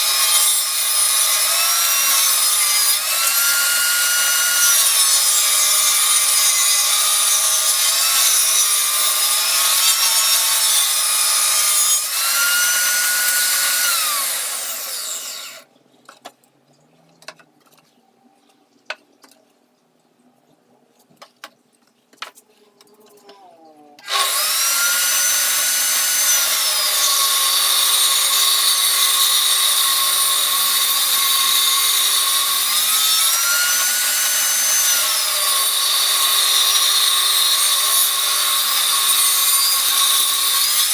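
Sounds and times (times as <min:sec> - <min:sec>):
electric power tool cutting wood: 0:00.0 - 0:15.6, 0:24.0 - 0:40.9.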